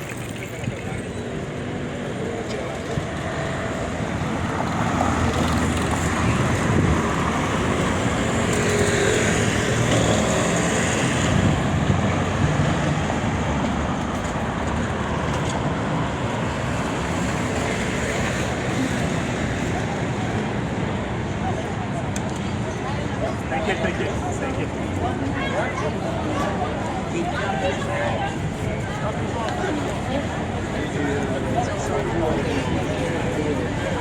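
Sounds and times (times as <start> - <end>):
cars passing: 0.0 - 34.0.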